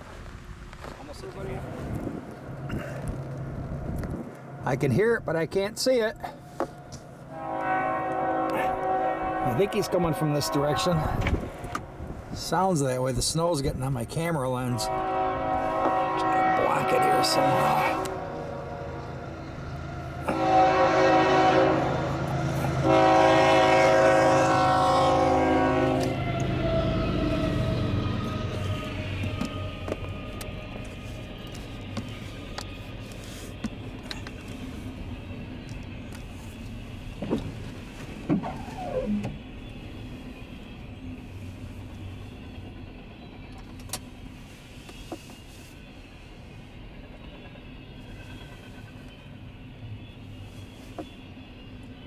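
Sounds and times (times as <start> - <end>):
train rumbling: 0.0 - 52.0
locomotive air horn: 7.2 - 11.8, 14.6 - 34.8, 36.0 - 42.5.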